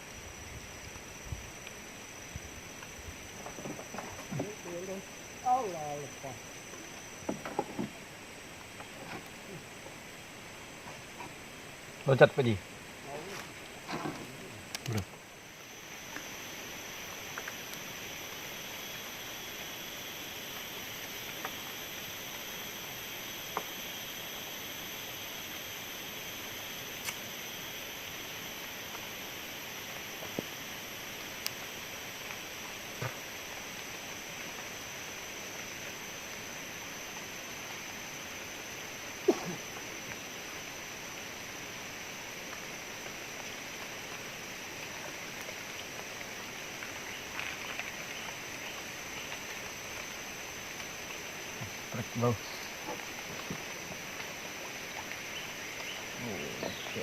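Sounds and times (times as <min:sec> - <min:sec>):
faint high drone: 0:00.0 - 0:10.8, 0:11.4 - 0:45.5, 0:46.9 - 0:57.0
outdoor background hiss: 0:00.0 - 0:57.0
faint clicks: 0:14.7 - 0:15.1.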